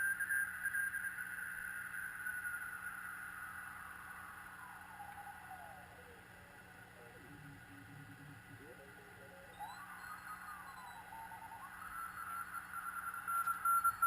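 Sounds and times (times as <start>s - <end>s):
faint whistle gliding down: 0.0s - 14.0s
radio band hiss: 5.1s - 11.7s.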